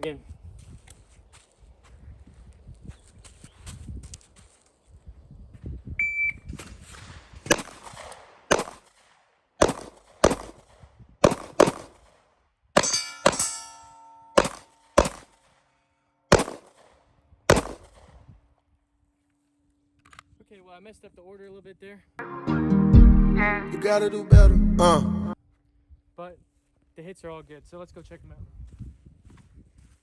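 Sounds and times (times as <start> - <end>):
shot timer beep: 6.0 - 6.4
pistol shots: 7.4 - 12.2, 14.4 - 15.6, 16.3 - 18.2
metallic ringing: 12.8 - 14.9.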